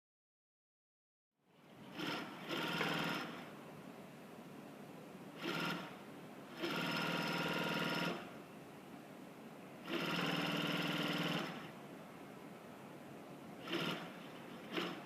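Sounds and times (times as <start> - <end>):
sewing machine stitching: 1.8 - 3.5, 5.4 - 8.3, 9.8 - 11.7, 13.6 - 15.0.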